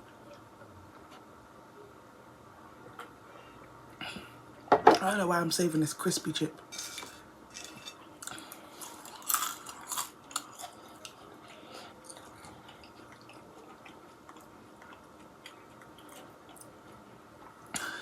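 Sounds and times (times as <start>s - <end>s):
crunching food: 6.8s - 17.0s
chewing food: 7.5s - 18.0s.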